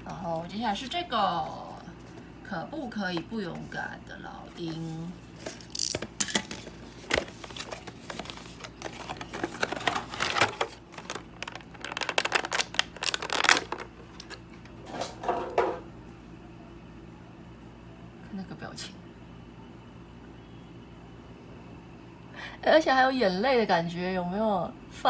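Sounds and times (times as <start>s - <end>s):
packaging crinkling and rustling: 4.6s - 14.6s.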